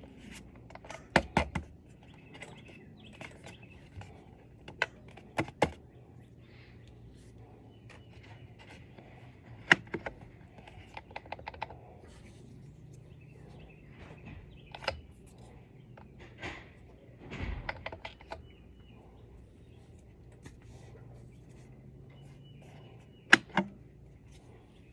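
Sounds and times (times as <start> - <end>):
faint steady hum: 0.0 - 24.9.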